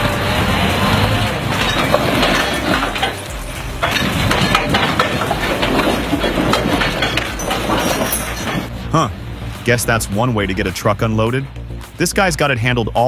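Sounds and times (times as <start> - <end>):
wood chipper chewing wood: 0.0 - 8.7.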